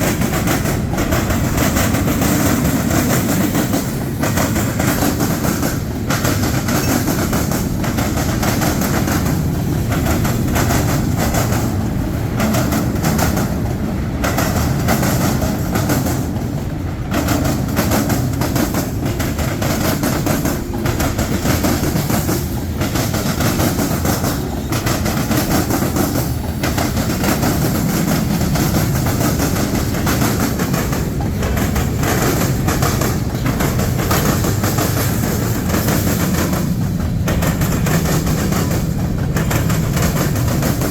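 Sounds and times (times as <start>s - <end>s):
freight train rumbling past: 0.0s - 40.9s
wheels clattering over rail joints: 0.0s - 40.9s.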